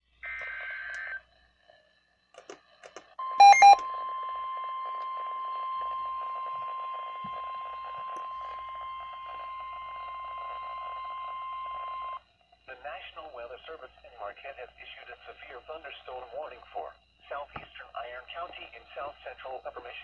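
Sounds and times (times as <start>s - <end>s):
short loud beeps: 3.2s - 3.8s
steady warning alarm tone: 3.2s - 12.2s.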